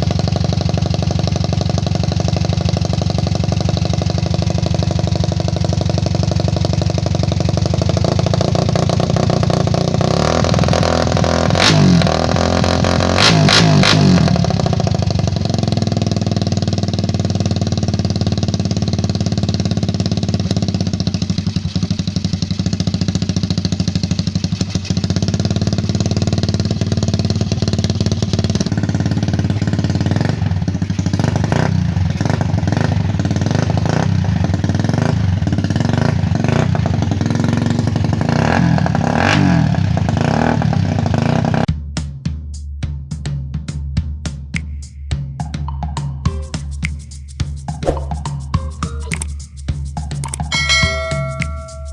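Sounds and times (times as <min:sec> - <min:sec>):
motorcycle engine revving: 0:00.0 - 0:41.7.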